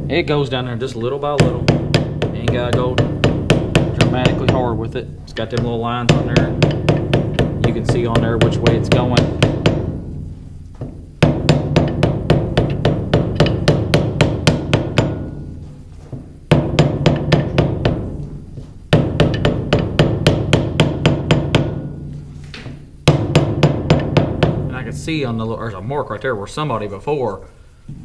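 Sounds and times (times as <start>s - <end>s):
small hammer tapping metal: 5.4s - 10.0s, 10.7s - 15.8s, 16.5s - 18.3s, 18.9s - 22.2s.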